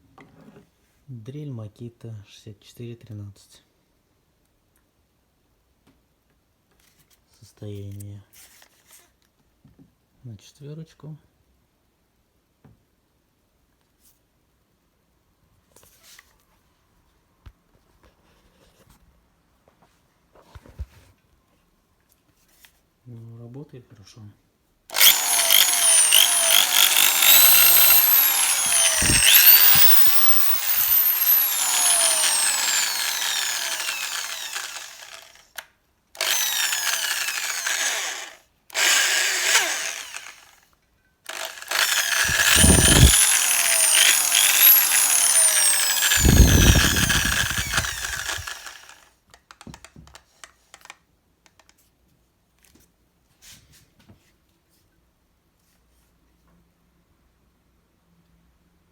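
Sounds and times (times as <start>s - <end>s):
electric drill motor whine: 24.9s - 35.4s, 36.2s - 40.5s, 41.3s - 49.0s.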